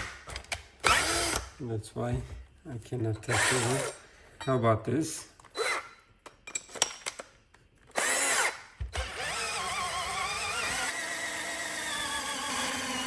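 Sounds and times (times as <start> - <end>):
electric drill boring into wood: 0.8 - 1.5, 8.0 - 13.0.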